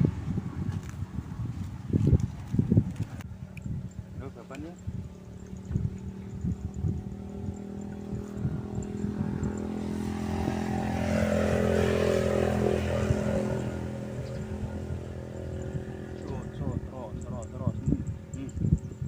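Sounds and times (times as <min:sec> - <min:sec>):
motor engine running: 0:00.0 - 0:19.0.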